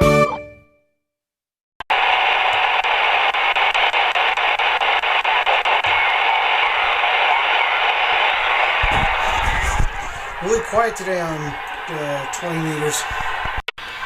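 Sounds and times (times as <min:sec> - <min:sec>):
radio receiver hiss: 0:01.9 - 0:10.6
radio click: 0:02.1 - 0:10.1.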